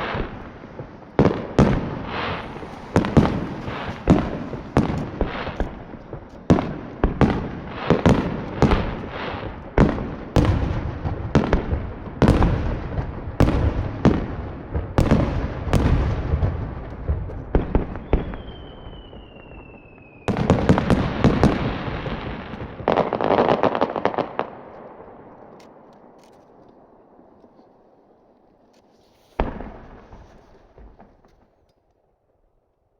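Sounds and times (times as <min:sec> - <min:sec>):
falling firework whistle: 0:00.0 - 0:09.5, 0:15.0 - 0:23.4
firework crackling: 0:00.0 - 0:31.6
firework shells bursting: 0:00.0 - 0:31.9.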